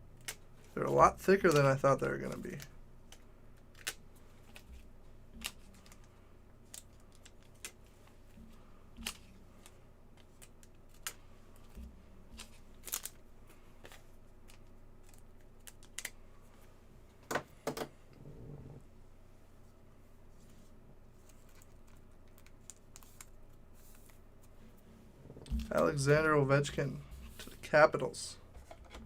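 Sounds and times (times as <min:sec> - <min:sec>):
plastic sleeves clicking and crinkling: 0:00.2 - 0:16.2, 0:21.2 - 0:24.6.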